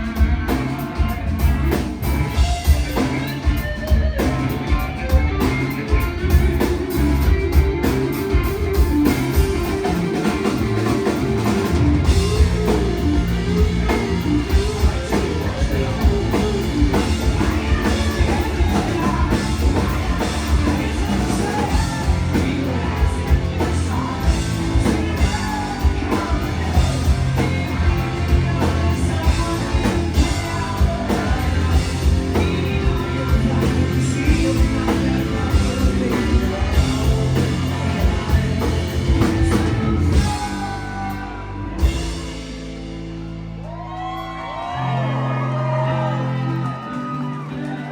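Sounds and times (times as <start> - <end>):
drum kit beating: 0.0 - 47.9
electric guitars: 0.0 - 47.9
person singing: 4.4 - 42.2.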